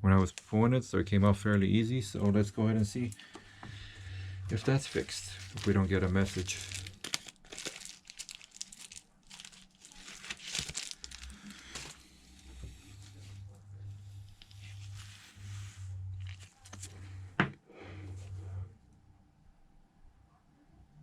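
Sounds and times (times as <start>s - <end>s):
low pulsing hum: 1.2s - 7.2s, 10.8s - 19.7s
crinkling handling noise: 1.3s - 18.6s.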